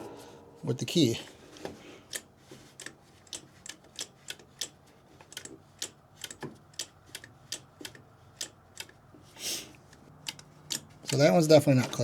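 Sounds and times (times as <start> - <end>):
sharp relay clicks: 2.1 - 9.1, 9.9 - 11.6.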